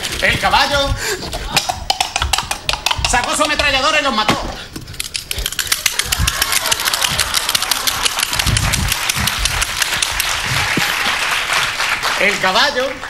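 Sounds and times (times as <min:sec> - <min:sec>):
low thumps: 0:00.0 - 0:05.5, 0:08.2 - 0:10.9.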